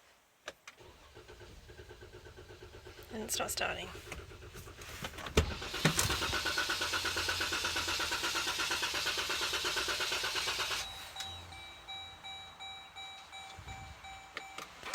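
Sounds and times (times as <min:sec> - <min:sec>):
engine cranking on starter motor: 0:00.8 - 0:11.6
faint steady high tones: 0:10.6 - 0:14.9.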